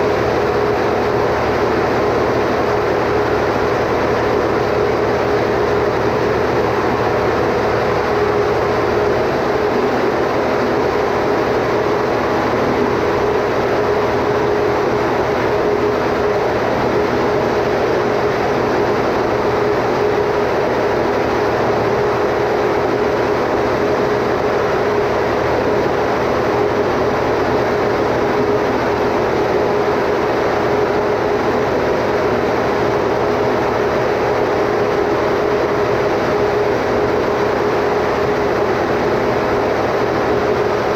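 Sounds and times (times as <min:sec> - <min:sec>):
generator engine drone: 0:00.0 - 0:40.9.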